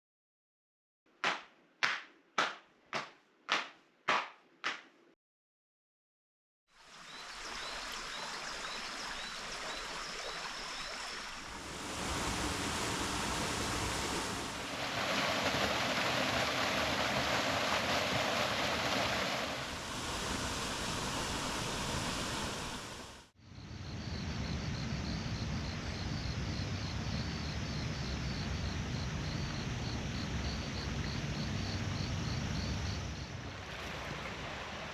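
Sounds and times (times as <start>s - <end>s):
stream and waterfall rushing: 6.8s - 23.3s
insects chirping faintly: 19.7s - 33.4s.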